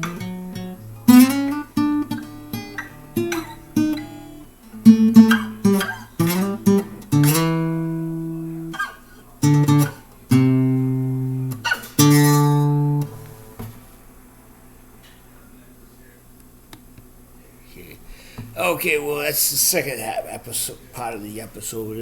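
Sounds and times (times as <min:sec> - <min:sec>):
acoustic guitar: 0:00.0 - 0:15.4.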